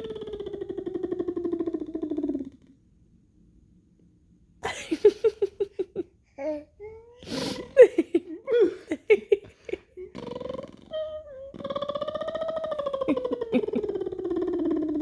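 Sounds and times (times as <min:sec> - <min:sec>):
person making laugh-like syllables: 0:04.6 - 0:06.0, 0:07.2 - 0:10.2, 0:12.4 - 0:15.0.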